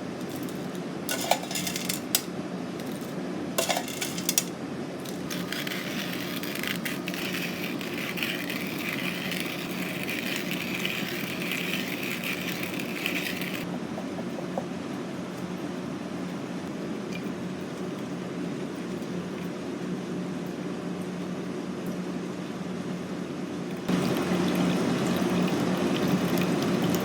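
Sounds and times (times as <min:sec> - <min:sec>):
steady low hum: 0:00.0 - 0:17.2
dishes clinking: 0:03.6 - 0:04.5.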